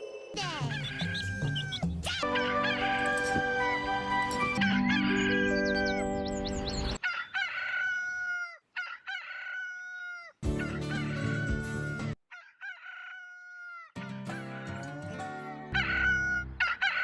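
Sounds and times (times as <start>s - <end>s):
music: 0.3s - 7.0s, 10.4s - 12.2s, 14.0s - 16.6s
rooster crowing: 7.0s - 14.8s, 15.4s - 17.0s.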